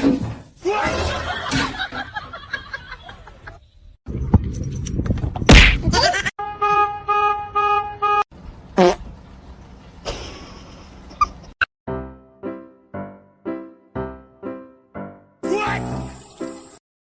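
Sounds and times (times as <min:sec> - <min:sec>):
horn beeping: 0:06.4 - 0:08.2.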